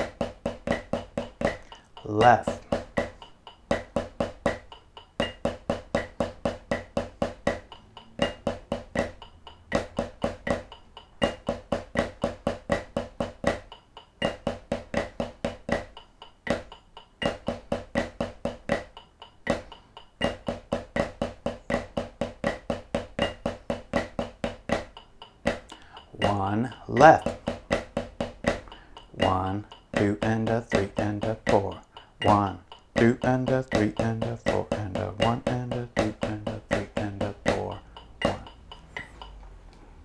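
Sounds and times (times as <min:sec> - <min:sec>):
snare drum played with sticks: 0:00.0 - 0:39.4.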